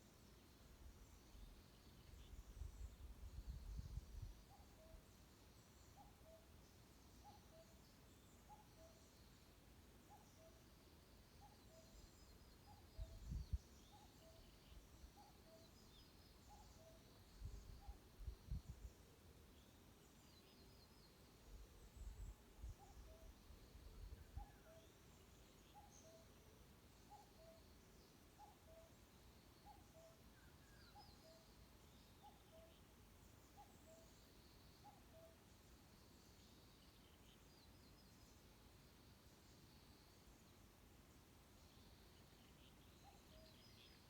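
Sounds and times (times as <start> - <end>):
small birds chirping: 0.0 - 44.0
soft background hiss: 0.0 - 44.0
small birds chirping and trilling: 41.2 - 44.0.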